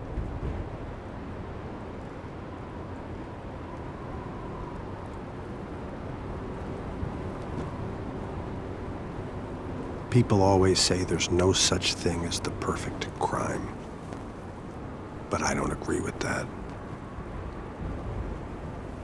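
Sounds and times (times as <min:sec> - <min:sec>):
low rumble with faint hum: 0:00.0 - 0:19.0.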